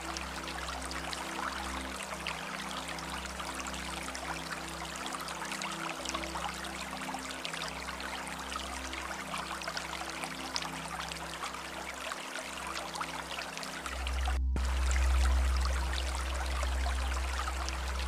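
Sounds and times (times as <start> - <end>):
stream water trickling: 0.0 - 18.0
low rumble: 13.8 - 18.0.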